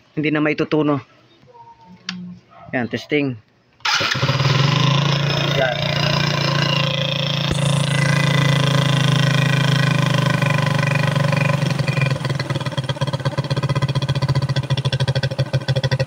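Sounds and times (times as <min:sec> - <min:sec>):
motorcycle engine stuttering idle: 0:05.0 - 0:16.0.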